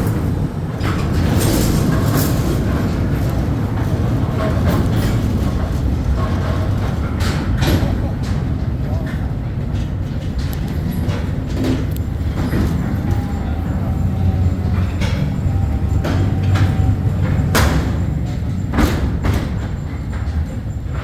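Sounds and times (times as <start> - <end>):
train rumbling on rails: 0.0 - 21.0
faint thin squeal: 12.4 - 18.7.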